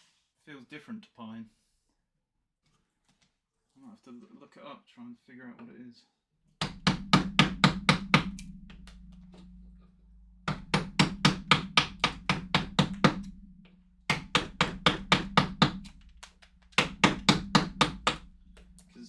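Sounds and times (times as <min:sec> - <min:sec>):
mallet striking chisel into wood: 0:06.6 - 0:09.6, 0:10.4 - 0:18.9.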